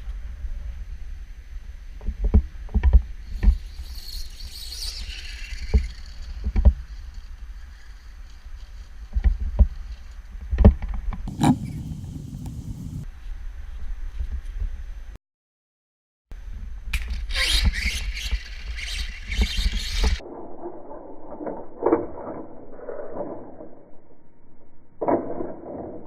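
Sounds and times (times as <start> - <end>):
high motor whine: 11.3 - 13.0
toy truck bouncing thumps: 11.3 - 13.0
steady low rumble: 11.3 - 13.1.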